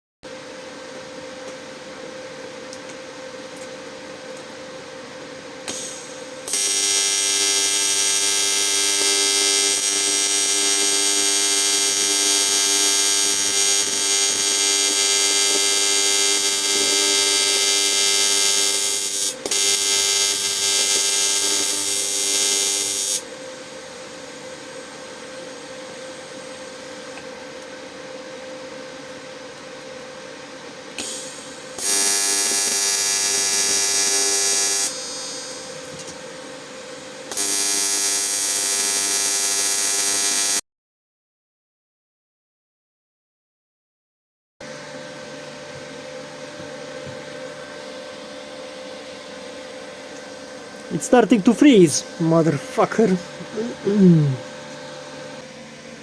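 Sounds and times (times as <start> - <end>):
welding arc buzzing: 5.6 - 25.6, 31.0 - 36.2, 37.2 - 40.6, 50.9 - 54.4
welding machine humming: 5.6 - 27.7, 30.9 - 40.6.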